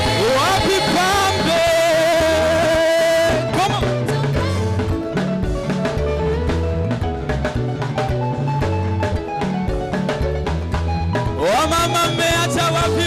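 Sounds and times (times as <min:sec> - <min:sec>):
gospel band playing upbeat groove: 0:00.0 - 0:13.0.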